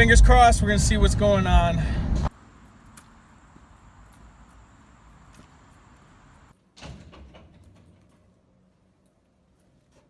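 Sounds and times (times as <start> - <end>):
door banging shut: 6.8 - 8.0.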